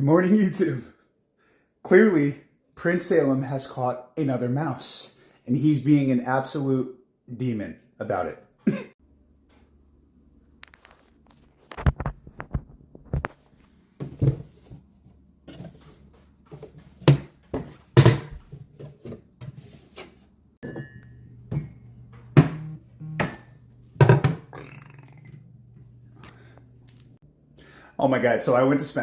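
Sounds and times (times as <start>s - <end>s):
dishes and cups clinking: 20.6s - 24.5s.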